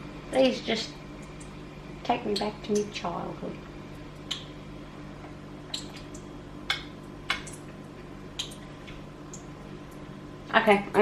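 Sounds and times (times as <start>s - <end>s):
steady low hum: 0.0s - 11.0s
faint pops and ticks of melting fat: 1.1s - 3.0s, 3.9s - 4.6s, 5.2s - 10.1s.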